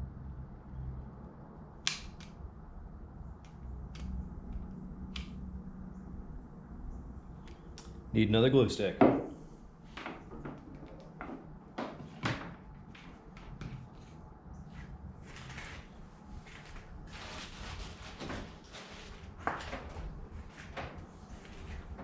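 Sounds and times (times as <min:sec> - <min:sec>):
low steady hum: 0:00.0 - 0:22.0
scraping on wood: 0:09.2 - 0:22.0.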